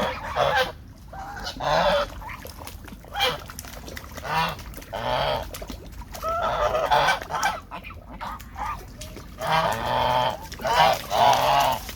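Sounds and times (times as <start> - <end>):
geese honking: 0.0 - 2.4, 6.2 - 8.8, 9.4 - 11.8.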